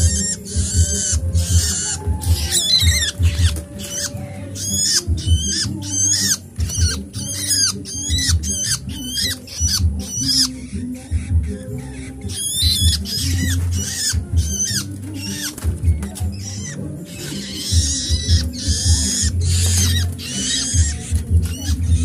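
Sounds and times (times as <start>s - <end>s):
nestling birds begging chirps: 0.0s - 22.0s.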